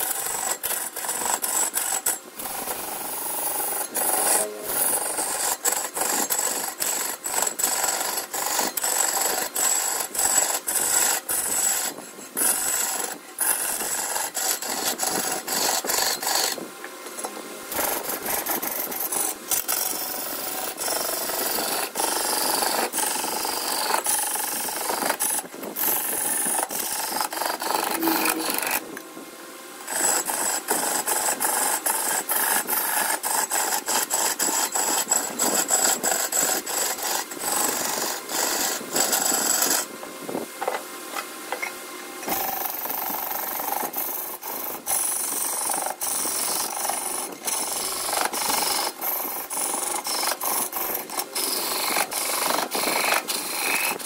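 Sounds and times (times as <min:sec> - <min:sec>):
tool scraping wood on lathe: 0:00.0 - 0:29.0, 0:29.9 - 0:39.9, 0:42.2 - 0:54.0.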